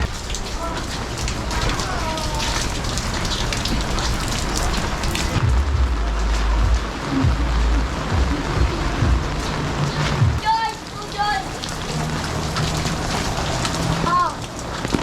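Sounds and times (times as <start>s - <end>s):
heavy rain pattering: 0.0s - 15.0s
low rumble: 5.4s - 10.4s.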